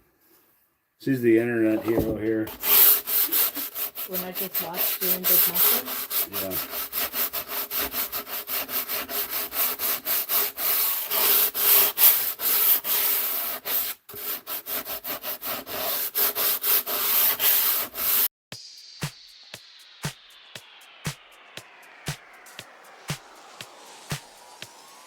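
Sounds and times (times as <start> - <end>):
sandpaper sanding wood: 2.5 - 18.3
music with ticking beat: 18.5 - 25.0.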